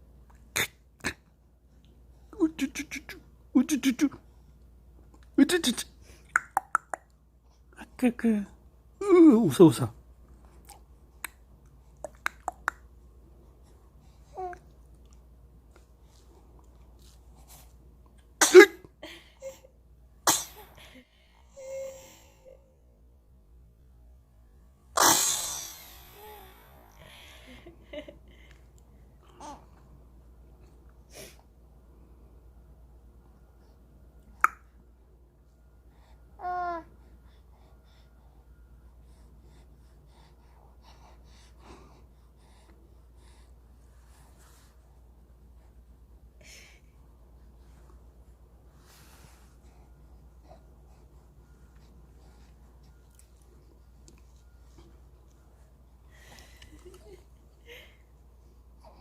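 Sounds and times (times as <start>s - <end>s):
infant sneezing: 0.5s - 1.3s, 18.4s - 18.9s, 20.3s - 20.9s, 25.0s - 26.4s.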